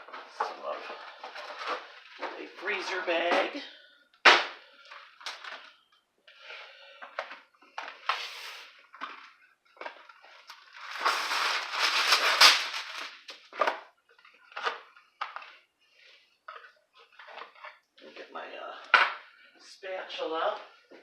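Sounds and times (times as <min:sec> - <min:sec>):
paper and plastic bag crinkling: 0:00.0 - 0:03.4, 0:07.3 - 0:15.6.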